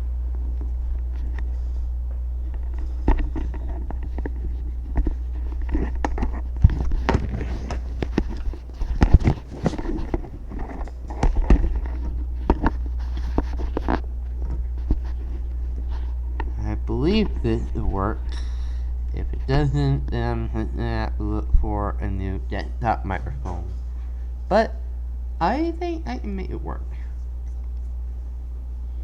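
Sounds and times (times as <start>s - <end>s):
microphone handling noise: 0.0s - 24.4s
steady low hum: 0.0s - 29.0s.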